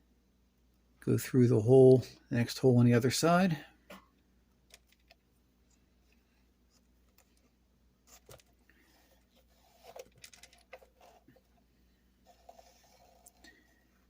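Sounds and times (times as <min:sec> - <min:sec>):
thread pulled through leather: 0:06.7 - 0:11.6, 0:12.2 - 0:13.8.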